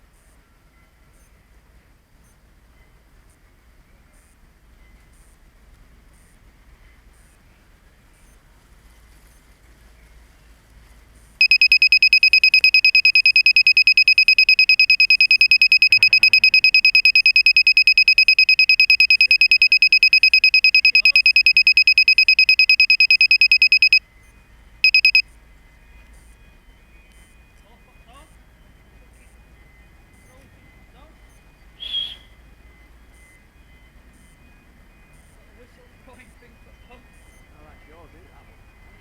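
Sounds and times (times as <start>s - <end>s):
shrill high beeps: 11.4s - 25.2s.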